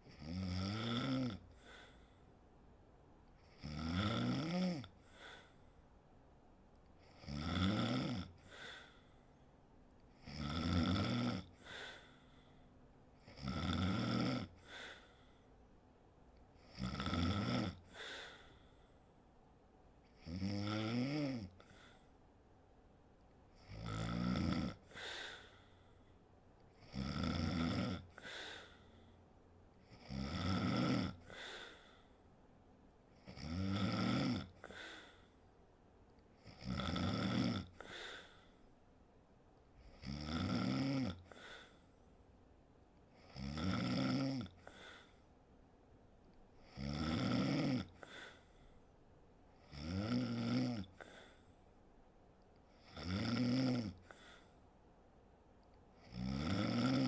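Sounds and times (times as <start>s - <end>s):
woman snoring: 0.1s - 2.0s, 3.4s - 5.6s, 7.0s - 9.0s, 10.2s - 12.1s, 13.2s - 15.1s, 16.6s - 18.5s, 20.2s - 21.8s, 23.6s - 25.6s, 26.8s - 28.8s, 29.9s - 31.8s, 33.2s - 35.2s, 36.4s - 38.4s, 39.8s - 41.8s, 43.2s - 45.1s, 46.6s - 48.4s, 49.6s - 51.4s, 52.8s - 54.4s, 56.0s - 57.0s.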